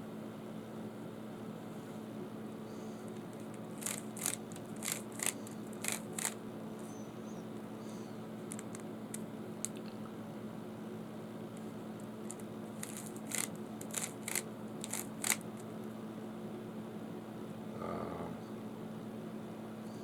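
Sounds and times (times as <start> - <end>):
steady low hum: 0.0 - 20.0
puzzle cube plastic clicks: 3.8 - 6.4, 12.3 - 15.6.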